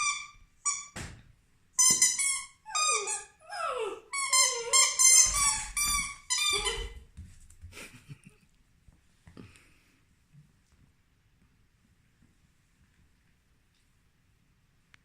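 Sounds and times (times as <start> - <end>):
puppy squeals: 0.0 - 0.9, 1.8 - 7.0
rubber squeaky toy squeaking: 0.0 - 1.0, 1.8 - 7.0.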